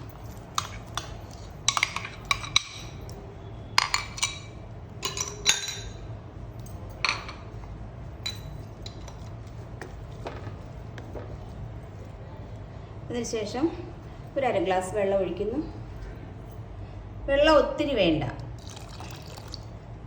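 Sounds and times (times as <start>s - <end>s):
spoon clinking against jar and pan: 0.0s - 3.1s, 3.8s - 6.0s, 8.2s - 9.4s.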